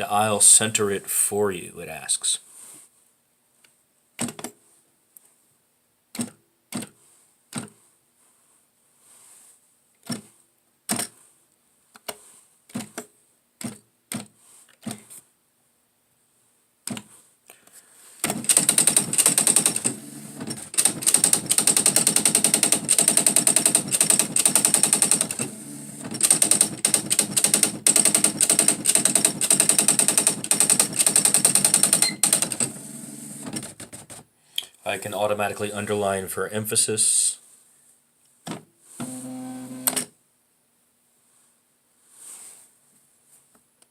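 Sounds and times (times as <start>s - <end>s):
typewriter printing rapidly: 18.2s - 34.2s.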